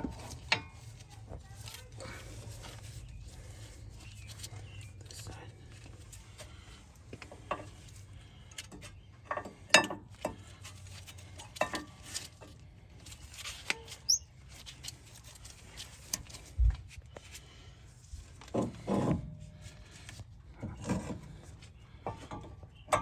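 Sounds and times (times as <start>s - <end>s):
brief squeak: 13.8s - 14.3s.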